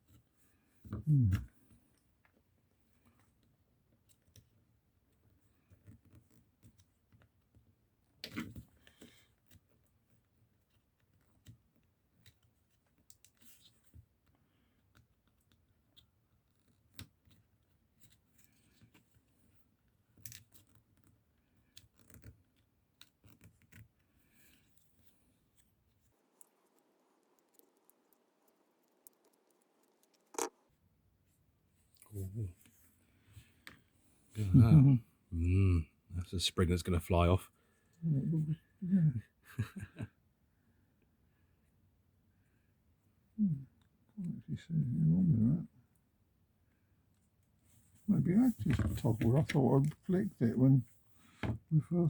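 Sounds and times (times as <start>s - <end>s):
small parts clicking and scraping: 26.1s - 30.7s.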